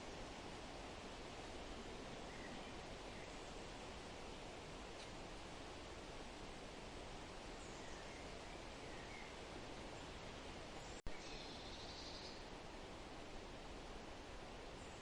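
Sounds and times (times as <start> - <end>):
forest rustling hiss: 0.0 - 15.0
soft bird chirps: 7.6 - 9.4, 10.8 - 12.5
bird call: 11.1 - 12.4.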